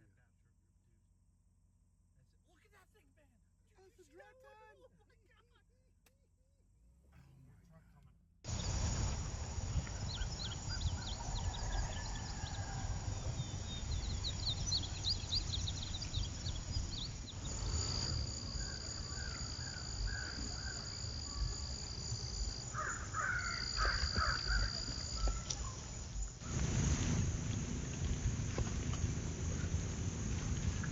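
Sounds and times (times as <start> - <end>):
insect buzzing: 7.0 - 7.8, 8.5 - 30.9
wind rumble on microphone: 8.5 - 22.5, 23.8 - 30.9
small birds chirping: 8.5 - 26.5
harsh bird calls: 22.6 - 26.0.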